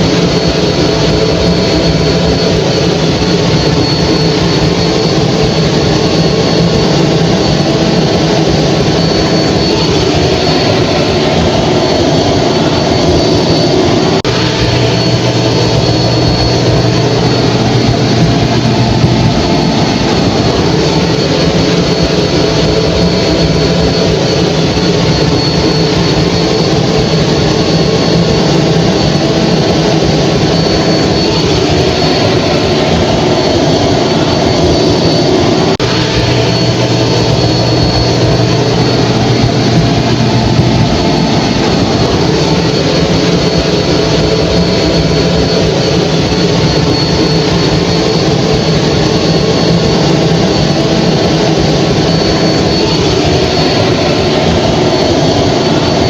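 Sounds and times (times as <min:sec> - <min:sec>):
hair dryer running: 0:00.0 - 0:24.0.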